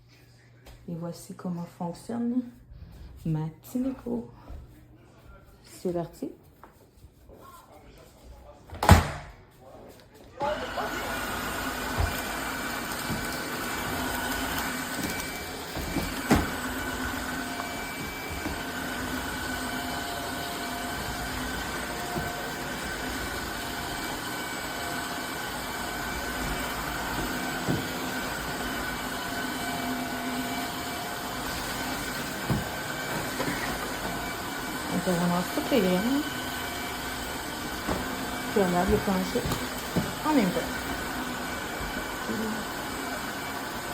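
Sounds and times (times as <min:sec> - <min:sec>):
vacuum mop whining: 0:10.2 - 0:43.9.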